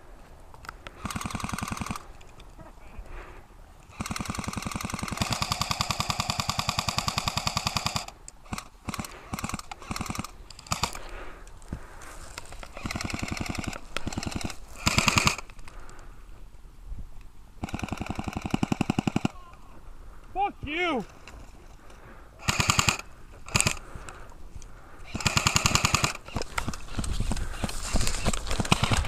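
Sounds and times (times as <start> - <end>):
airsoft guns firing: 0.9 - 2.1, 3.9 - 11.2, 12.7 - 15.5, 17.6 - 19.6, 22.4 - 23.9, 25.1 - 29.0.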